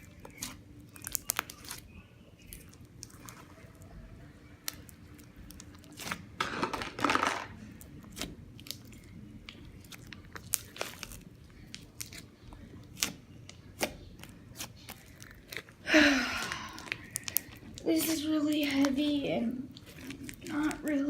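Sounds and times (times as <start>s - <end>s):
slime squishing: 0.0s - 21.0s.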